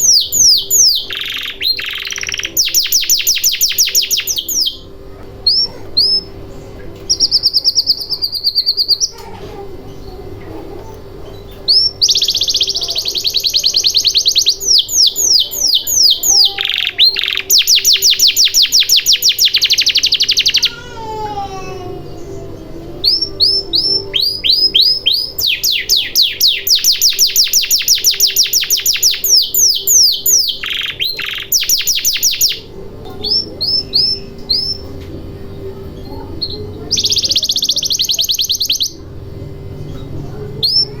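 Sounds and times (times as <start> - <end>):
canary singing: 0.0 - 41.0.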